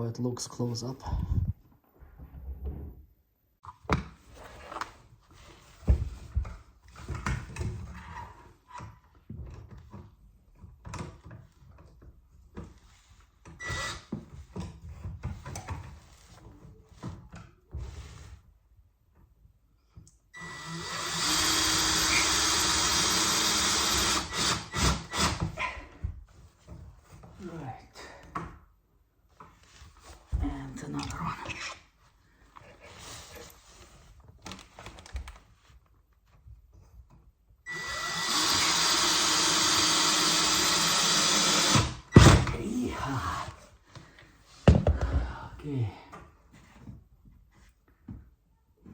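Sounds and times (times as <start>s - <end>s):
power drill driving screw into wood: 13.6s - 14.1s, 20.4s - 25.6s, 37.7s - 42.5s.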